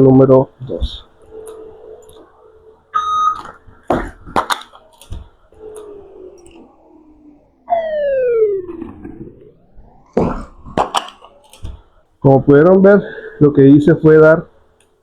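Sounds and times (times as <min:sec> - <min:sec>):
falling tone: 0:01.0 - 0:12.8.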